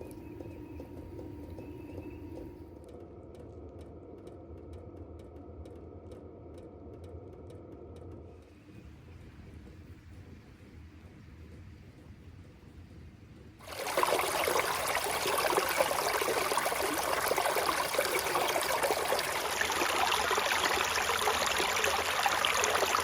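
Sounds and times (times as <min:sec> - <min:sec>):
faint low rumble: 0:00.0 - 0:23.0
running water splashing: 0:13.6 - 0:23.0.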